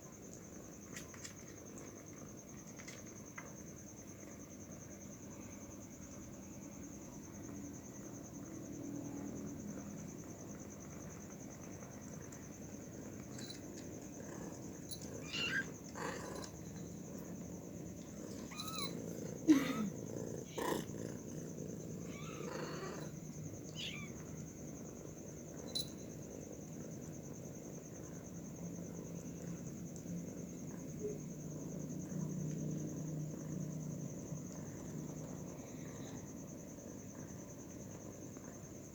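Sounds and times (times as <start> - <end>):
kittens mewing: 14.2 - 16.8, 18.0 - 24.4.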